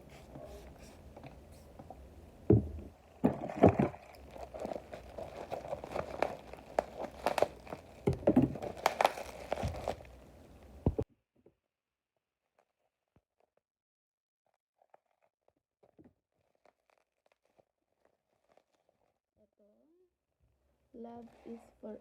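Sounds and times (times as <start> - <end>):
packaging crinkling and rustling: 3.3 - 11.0, 14.8 - 19.2.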